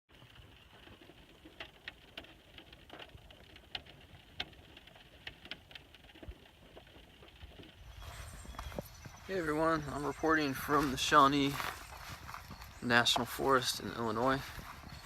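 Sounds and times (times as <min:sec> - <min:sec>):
irregular clicks and ticks: 0:00.1 - 0:07.8.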